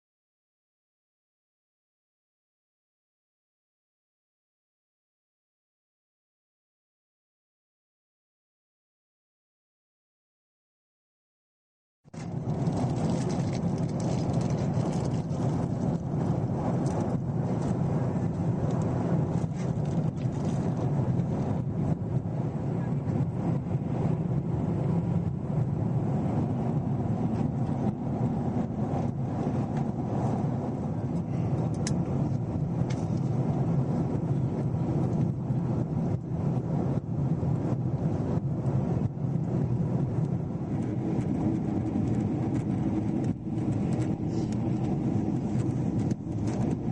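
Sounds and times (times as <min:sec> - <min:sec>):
airplane engines and airflow rush: 0:12.1 - 0:46.9
small clicks and rattles: 0:12.2 - 0:16.0.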